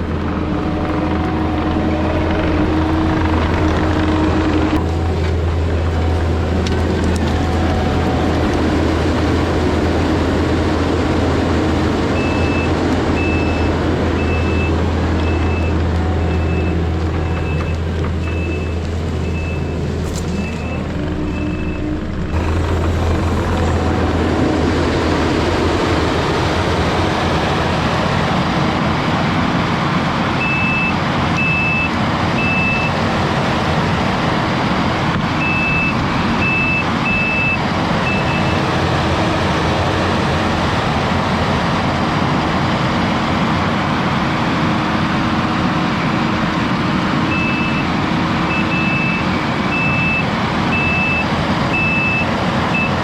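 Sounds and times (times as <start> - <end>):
heavy equipment diesel engine drone: 0.0 - 53.0
backup alarm beeping: 12.1 - 24.4, 48.5 - 53.0.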